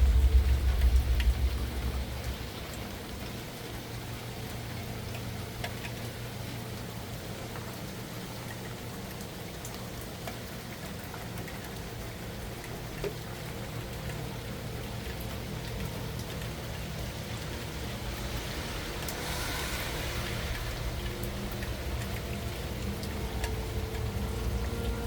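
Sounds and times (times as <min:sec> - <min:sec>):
low rumble: 0:00.0 - 0:04.7, 0:15.1 - 0:25.0
steady rain falling: 0:00.0 - 0:25.0.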